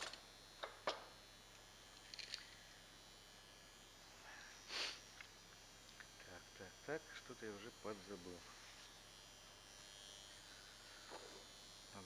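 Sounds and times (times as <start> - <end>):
person sniffing: 4.7 - 5.0.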